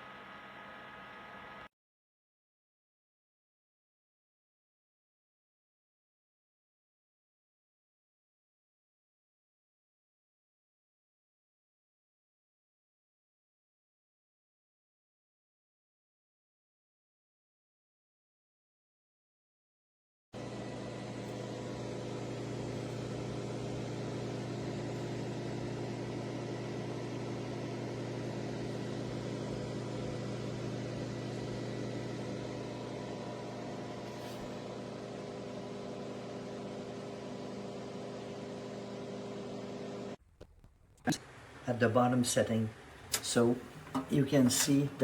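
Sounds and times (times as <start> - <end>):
appliance motor and fan hum: 0.0 - 1.7, 20.4 - 40.2, 41.1 - 45.0.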